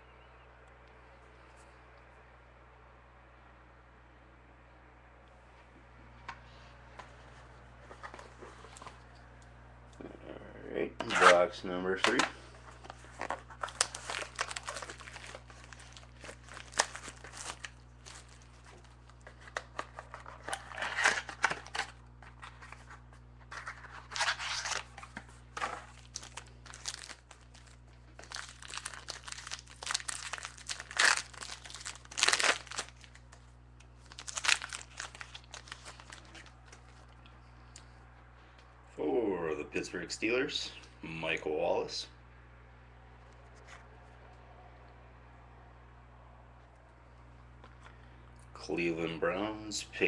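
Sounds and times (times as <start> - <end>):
plastic wrapping crinkling and tearing: 12.1 - 37.2.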